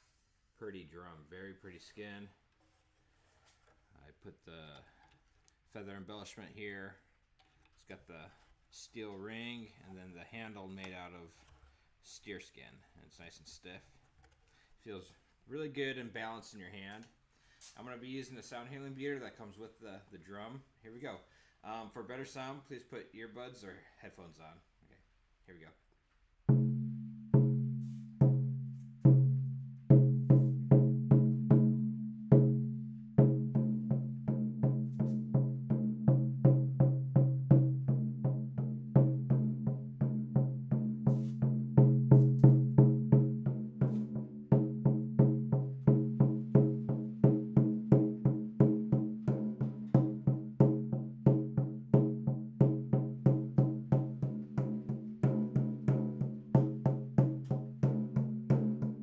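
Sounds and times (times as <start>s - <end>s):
frame drum beats: 26.4s - 59.0s.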